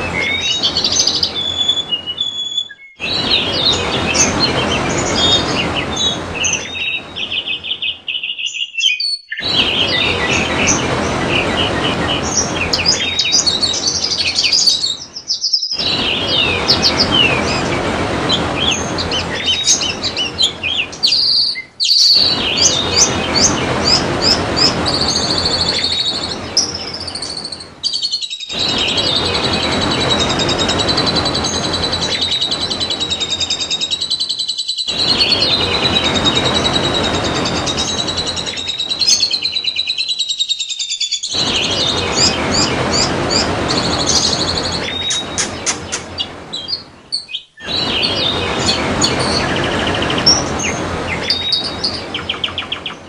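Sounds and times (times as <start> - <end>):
birds chirping and warbling: 0.0 - 53.0
trickling water: 15.8 - 27.9, 41.3 - 46.9, 47.6 - 53.0.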